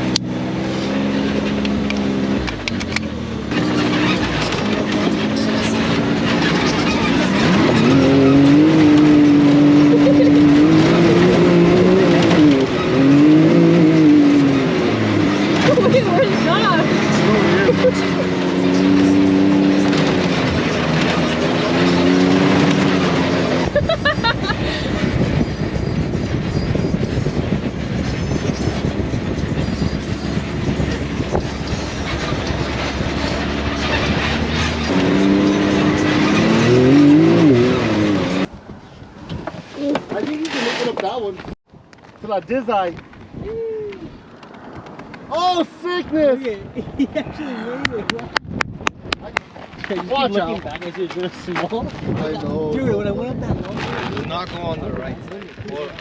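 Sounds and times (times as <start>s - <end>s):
engine revving: 0.0s - 38.5s
vehicle motor running high-pitched: 0.0s - 38.6s
wheels rumbling over dirt: 0.0s - 46.6s, 49.0s - 56.0s
wind noise: 3.5s - 56.0s.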